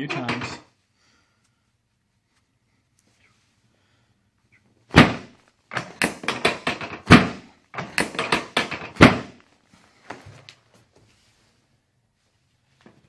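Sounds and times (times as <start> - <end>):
table section dropping with thunks: 0.0 - 0.7, 4.9 - 9.4.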